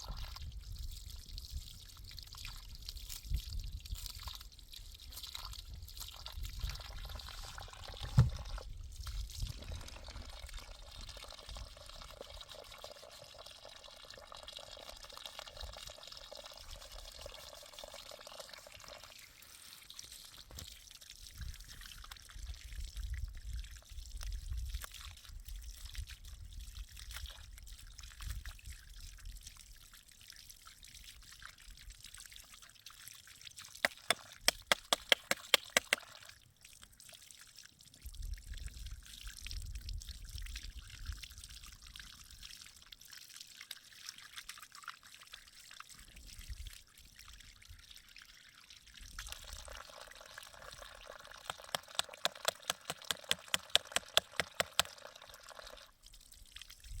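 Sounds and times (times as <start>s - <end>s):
water pouring and trickling: 0.0s - 57.0s
knocks: 8.1s - 8.4s.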